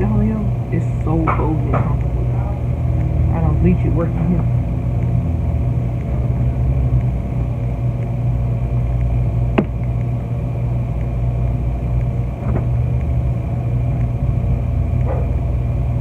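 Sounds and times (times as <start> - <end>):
low mechanical rumble: 0.0 - 16.0.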